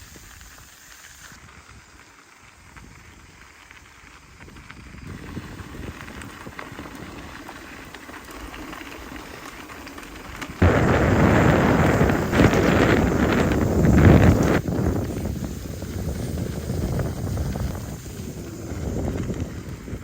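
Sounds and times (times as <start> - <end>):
low rumbling bike ride noise: 0.0 - 20.0
wind buffeting microphone: 4.3 - 7.6, 10.3 - 20.0.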